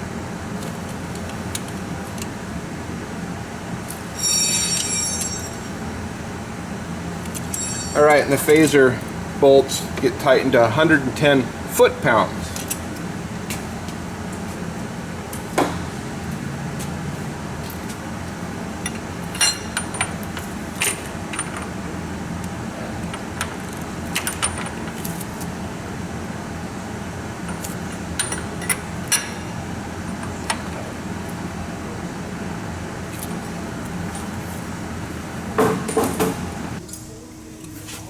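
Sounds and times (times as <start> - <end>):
steady low hum: 0.0 - 38.0
hand tools clinking on metal: 4.2 - 5.8, 7.3 - 8.8, 18.9 - 21.7.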